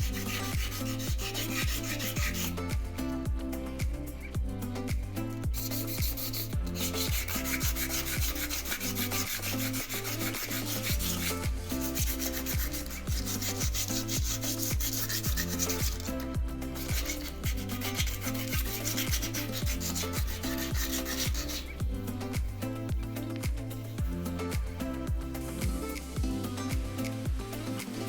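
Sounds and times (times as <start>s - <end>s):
sandpaper rubbing on metal: 0.0s - 3.1s, 5.5s - 21.8s
background music with beat: 0.0s - 28.0s.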